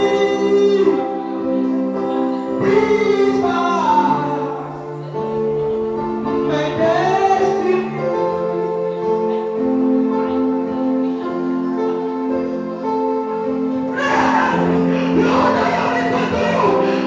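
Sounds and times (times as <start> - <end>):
sustained keyboard chords: 0.0 - 17.0
choir singing gospel: 12.6 - 17.0.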